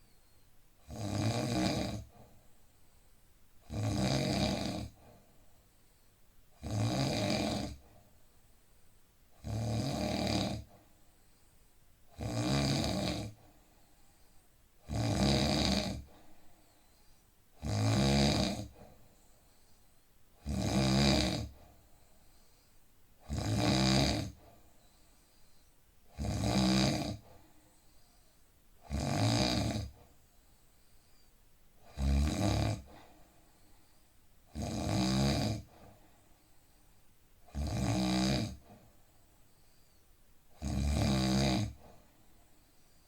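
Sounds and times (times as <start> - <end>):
quiet breathing: 0.0 - 43.0
man snoring: 0.9 - 2.2, 3.7 - 5.0, 6.6 - 7.8, 9.4 - 10.7, 12.2 - 13.4, 14.8 - 16.1, 17.6 - 18.8, 20.4 - 21.6, 23.2 - 24.4, 26.1 - 27.3, 28.8 - 30.0, 31.8 - 32.9, 34.5 - 35.7, 37.5 - 38.7, 40.6 - 41.8.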